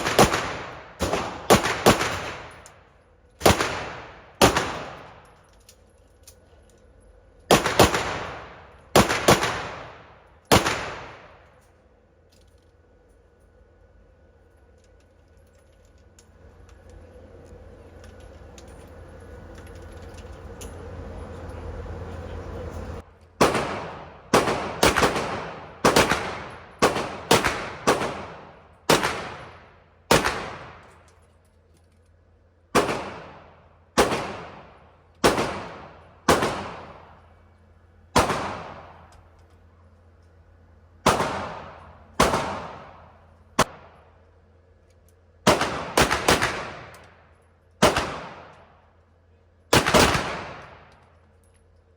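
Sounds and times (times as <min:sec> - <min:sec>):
pistol shots echoing: 0:00.0 - 0:02.7, 0:03.4 - 0:05.2, 0:07.5 - 0:11.4, 0:23.4 - 0:30.9, 0:32.8 - 0:37.2, 0:38.2 - 0:39.1, 0:41.0 - 0:44.0, 0:45.5 - 0:47.1, 0:47.8 - 0:48.7, 0:49.7 - 0:50.9.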